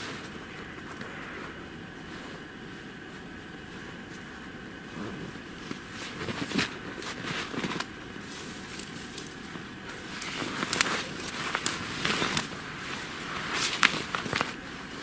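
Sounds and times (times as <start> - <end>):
rustling and crackling bedding: 0.0 - 15.0.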